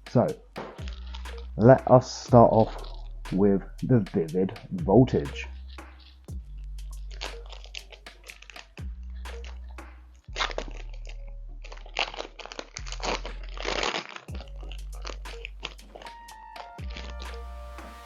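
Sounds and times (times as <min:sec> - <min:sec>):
foil wrapper crinkling and tearing: 0:00.8 - 0:01.7, 0:02.4 - 0:03.2, 0:05.5 - 0:18.0.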